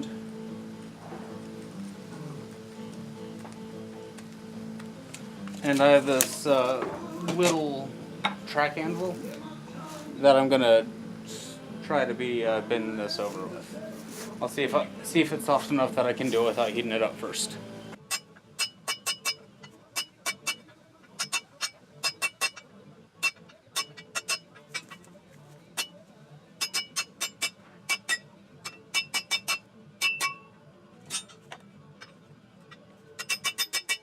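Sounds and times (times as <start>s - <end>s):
hammer striking metal bar: 18.0s - 24.9s, 26.6s - 30.5s, 33.2s - 34.0s.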